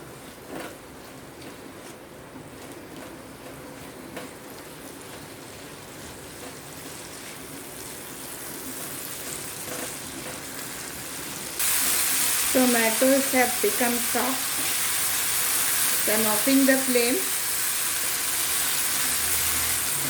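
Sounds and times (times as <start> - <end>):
tomatoes sizzling in a pan: 5.8 - 20.0.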